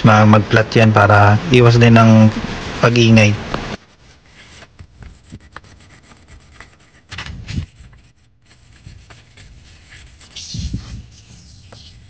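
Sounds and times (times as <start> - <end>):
sandpaper scraping brake disc: 4.3 - 12.0.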